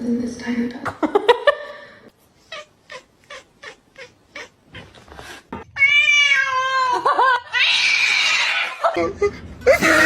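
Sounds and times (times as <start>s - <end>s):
cat meowing loudly: 5.8s - 6.9s.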